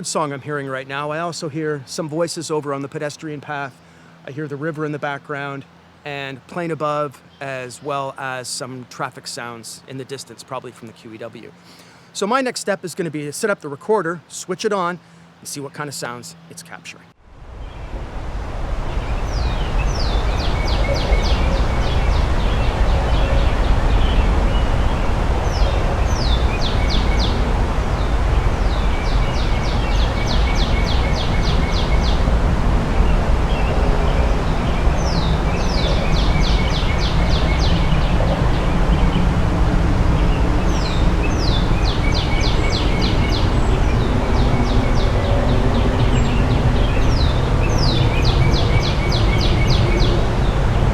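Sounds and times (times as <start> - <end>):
distant traffic rumble: 0.0 - 50.9
creek rushing: 17.3 - 50.9
bird singing whistled notes: 18.9 - 32.3, 33.0 - 39.2, 40.2 - 50.3.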